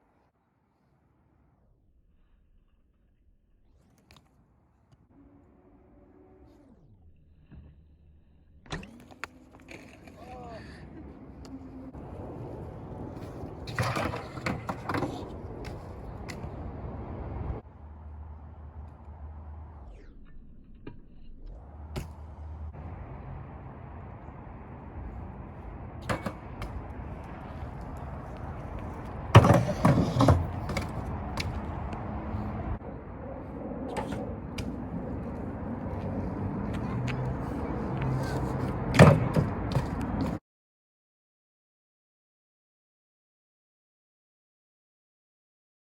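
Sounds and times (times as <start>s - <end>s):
bike tyres rolling: 5.3s - 19.9s, 21.5s - 40.4s.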